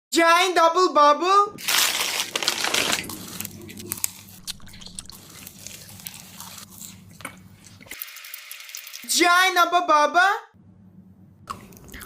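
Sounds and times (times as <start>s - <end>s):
gum chewing with wet clicks: 3.6s - 8.0s.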